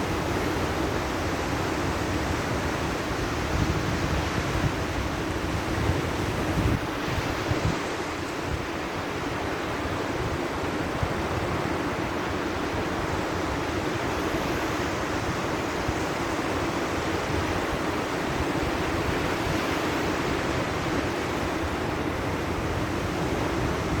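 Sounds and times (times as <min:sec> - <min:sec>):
sea surf washing on shore: 0:00.0 - 0:24.0
wind: 0:00.0 - 0:24.0.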